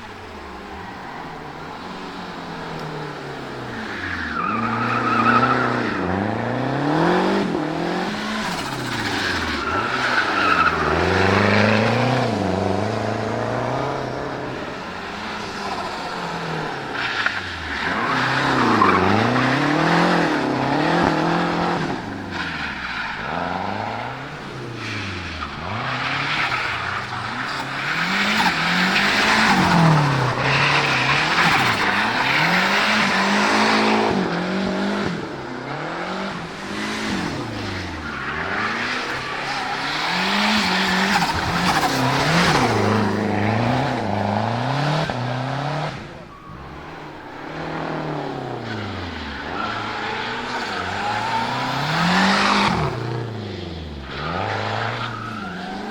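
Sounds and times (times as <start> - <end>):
car engine revving hard: 4.4 - 17.0.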